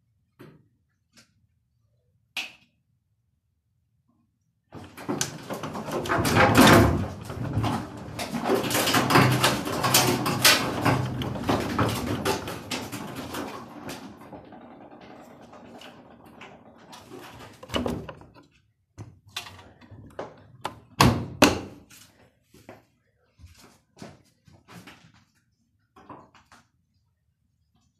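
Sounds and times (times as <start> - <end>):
washing machine running rough: 4.7 - 18.5
knocks and thuds: 4.8 - 14.5.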